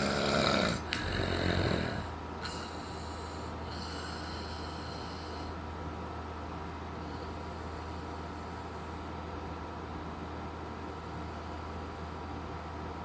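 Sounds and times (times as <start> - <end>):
person snoring: 0.0 - 5.3
steady low hum: 0.0 - 13.0.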